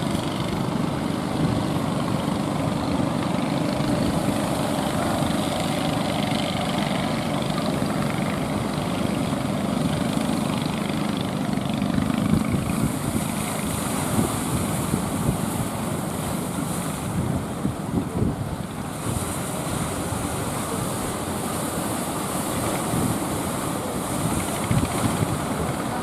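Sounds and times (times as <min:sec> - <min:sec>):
boat motor running: 0:00.0 - 0:26.0
waves breaking: 0:00.0 - 0:26.0
wind: 0:00.0 - 0:26.0.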